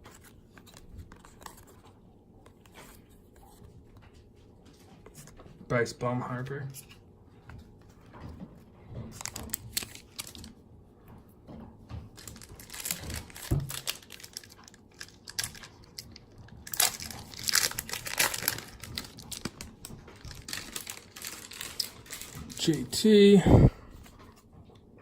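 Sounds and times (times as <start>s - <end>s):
cards being handled: 0.0s - 3.7s, 9.1s - 10.5s
wrappers crinkling and tearing: 9.1s - 10.6s, 12.1s - 23.4s.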